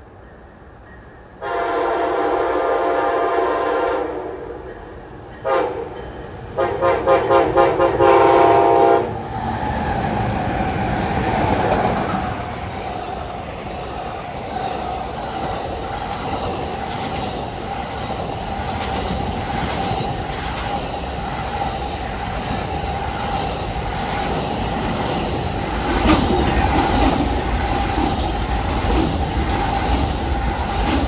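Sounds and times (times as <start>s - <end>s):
locomotive horn blasts: 1.4s - 4.3s, 5.4s - 5.9s, 6.6s - 9.2s
train wheels rumbling on rails: 3.0s - 31.0s.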